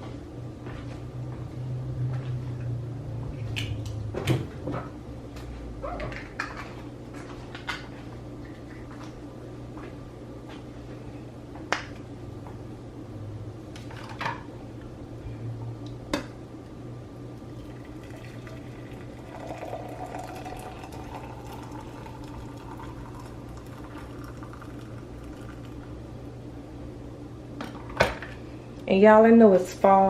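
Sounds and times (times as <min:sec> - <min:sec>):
steady low hum: 0:00.0 - 0:30.0
water pouring into a mug: 0:17.4 - 0:26.0.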